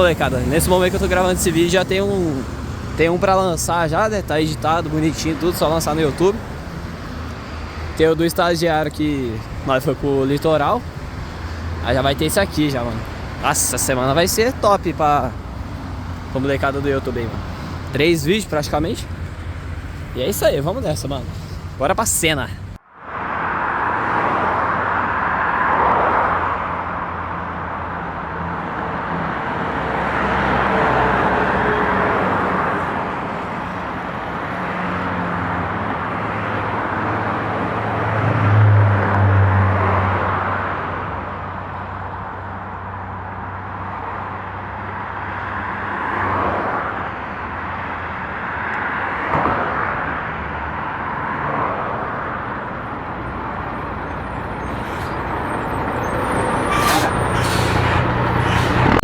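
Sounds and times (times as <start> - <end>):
diesel truck engine running: 0.0 - 22.8, 52.8 - 59.0
road traffic noise: 0.0 - 59.0.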